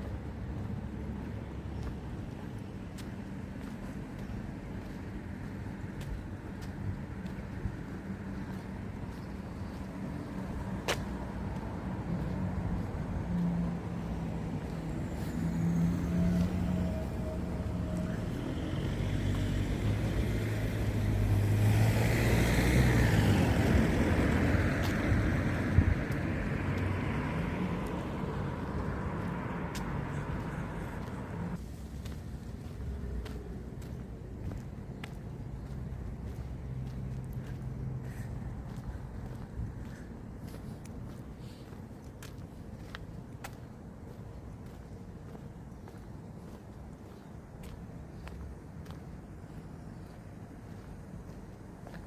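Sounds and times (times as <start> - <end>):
car driving past: 9.8 - 31.6.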